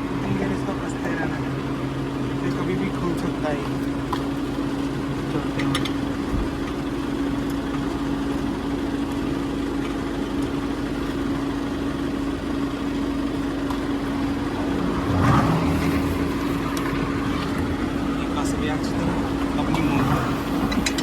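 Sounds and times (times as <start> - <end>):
motor vehicle running: 0.0 - 21.0.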